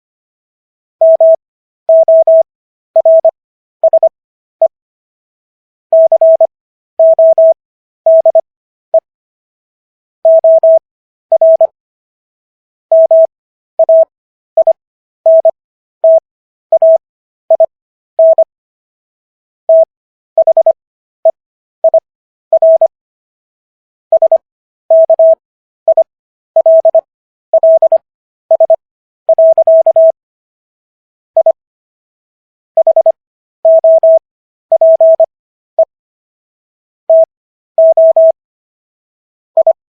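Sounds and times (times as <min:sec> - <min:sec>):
morse code tone: 0:03.0 - 0:04.8, 0:06.0 - 0:08.4, 0:10.3 - 0:11.7, 0:12.9 - 0:18.5, 0:19.7 - 0:20.8, 0:22.6 - 0:22.9, 0:24.1 - 0:27.0, 0:27.6 - 0:30.2, 0:32.8 - 0:35.3, 0:37.1 - 0:38.4, 0:39.6 - 0:39.8.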